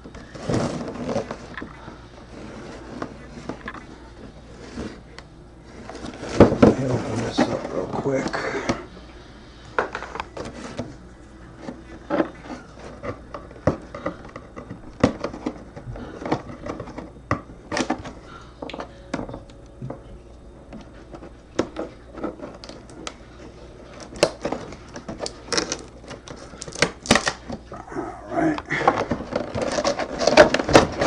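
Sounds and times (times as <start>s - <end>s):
cardboard packaging being handled: 0.1s - 3.8s, 20.9s - 27.7s, 28.7s - 31.0s.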